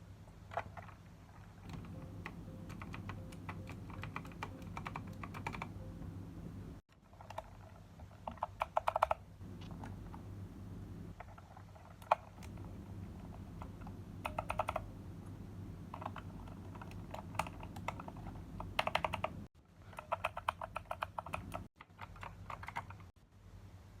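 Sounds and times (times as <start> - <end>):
steady low hum: 0.0 - 8.0, 8.6 - 19.5
typing on mechanical keyboard: 0.5 - 5.8, 7.1 - 10.1, 11.1 - 14.9, 15.9 - 23.1.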